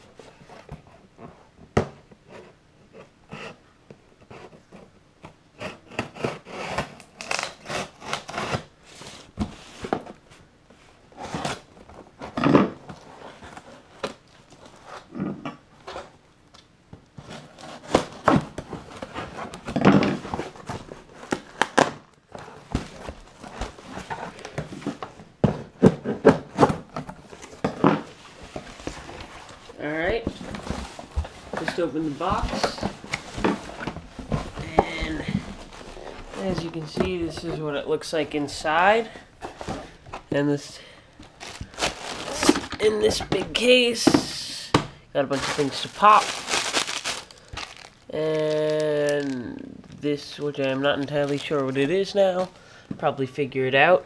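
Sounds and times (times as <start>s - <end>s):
cardboard box being opened: 17.2s - 37.6s, 41.4s - 42.7s, 45.3s - 49.4s.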